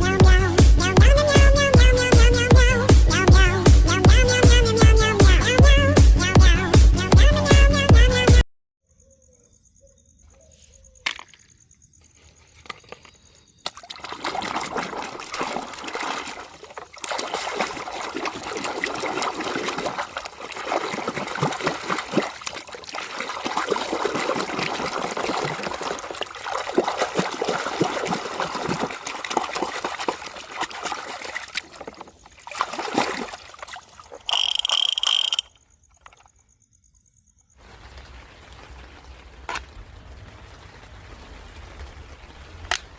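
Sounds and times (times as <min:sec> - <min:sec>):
water splashing and trickling: 0:12.5 - 0:36.4, 0:37.6 - 0:42.9.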